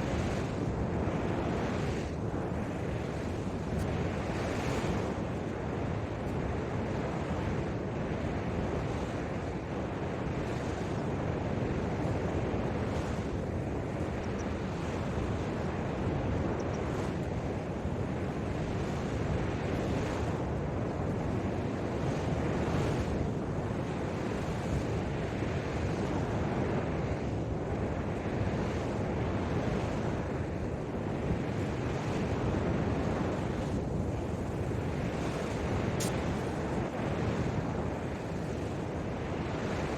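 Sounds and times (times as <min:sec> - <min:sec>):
ocean surf washing onto beach: 0:00.0 - 0:39.9
wind buffeting microphone: 0:00.0 - 0:39.9.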